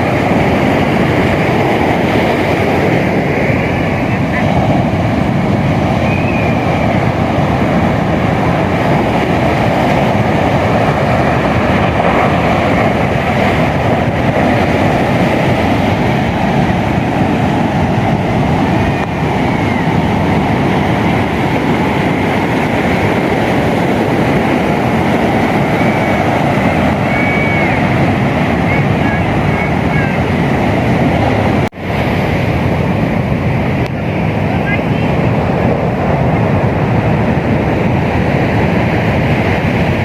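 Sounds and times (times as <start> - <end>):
ocean waves breaking on beach: 0.0 - 40.0.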